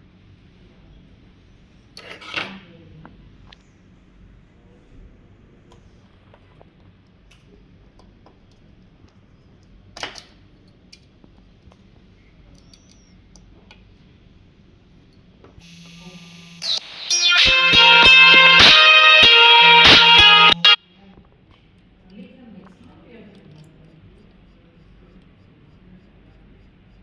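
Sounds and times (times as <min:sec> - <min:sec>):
steady hum: 0:15.6 - 0:20.8
music: 0:16.6 - 0:20.8.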